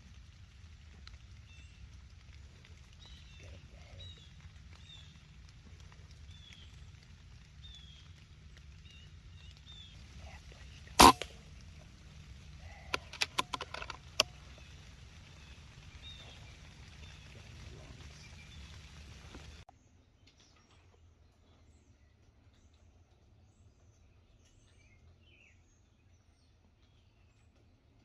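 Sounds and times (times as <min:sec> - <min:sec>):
low steady rumble: 0:00.0 - 0:28.0
small birds chirping: 0:00.0 - 0:28.0
air rifle shot: 0:11.0 - 0:11.4
sharp clicks and taps: 0:12.7 - 0:14.8.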